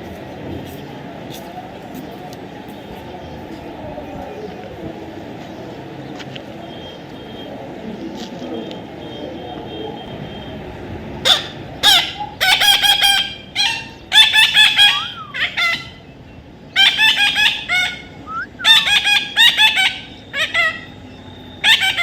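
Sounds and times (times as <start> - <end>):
parrot squawking: 11.2 - 16.0, 16.8 - 21.0, 21.6 - 22.0.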